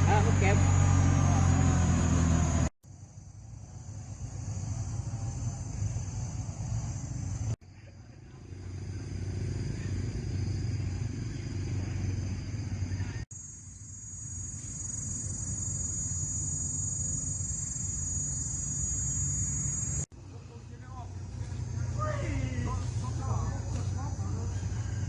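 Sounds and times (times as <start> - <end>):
high-pitched insect drone: 8.4 - 20.1.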